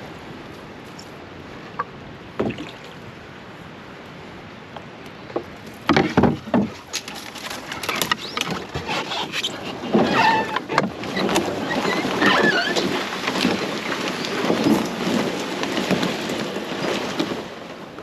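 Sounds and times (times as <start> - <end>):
hollow knocks from canoe hull: 1.8 - 2.8, 5.3 - 11.6
water splashing: 2.3 - 3.1
scraping and rustling through brush: 5.5 - 17.8.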